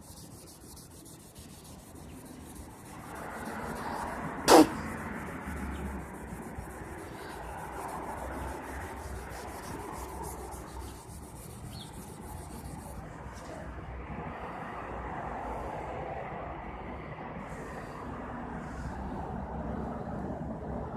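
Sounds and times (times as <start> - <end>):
hand rubbing on metal handle: 0.0 - 13.6.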